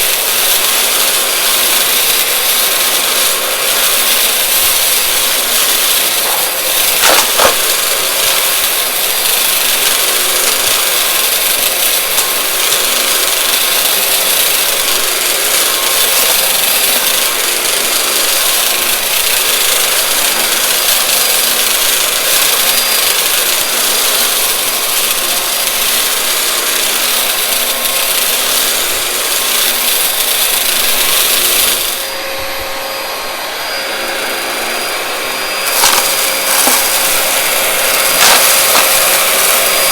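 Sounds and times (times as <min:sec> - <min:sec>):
vacuum cleaner sucking debris: 0:00.0 - 0:39.9
sharp crackle: 0:02.0 - 0:10.0, 0:35.7 - 0:39.9.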